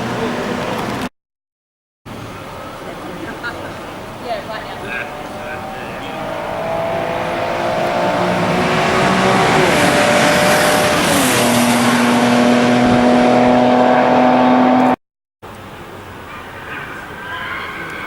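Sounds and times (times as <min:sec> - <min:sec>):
car engine accelerating with upshifts: 0:04.5 - 0:15.0.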